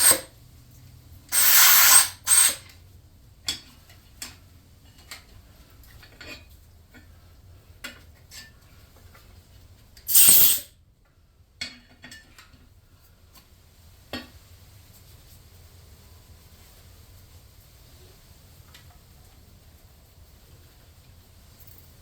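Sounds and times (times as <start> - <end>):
spray hiss: 1.4 - 2.6, 10.1 - 10.7.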